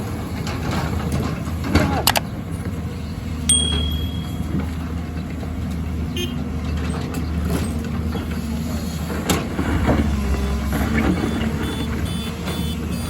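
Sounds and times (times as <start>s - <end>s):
diesel engine running: 0.0s - 13.0s
sharp metallic clink: 3.5s - 4.9s.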